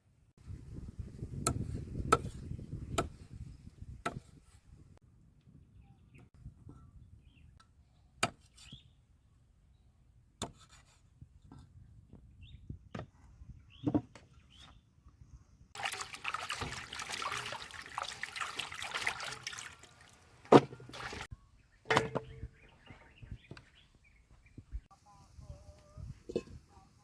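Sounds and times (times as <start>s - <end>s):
liquid being poured: 15.8s - 21.3s.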